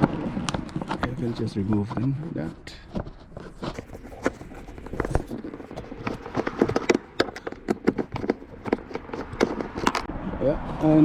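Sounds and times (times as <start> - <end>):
hand screwdriver clicking: 3.8 - 10.1.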